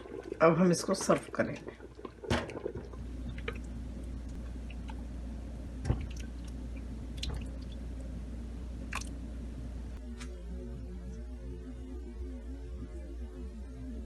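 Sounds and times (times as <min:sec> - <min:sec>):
soup sloshing and dripping: 0:00.0 - 0:08.2, 0:08.8 - 0:09.2
low steady hum: 0:00.0 - 0:14.0.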